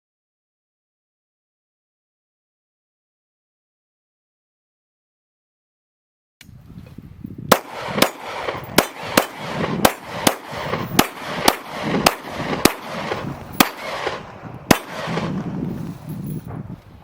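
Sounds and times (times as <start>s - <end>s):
semi-automatic gunshots: 7.5s - 15.7s.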